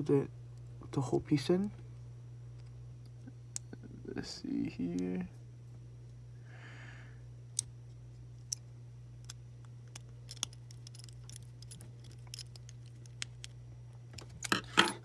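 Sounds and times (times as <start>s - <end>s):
low steady hum: 0.0s - 15.0s
small screws being screwed together: 9.2s - 13.6s.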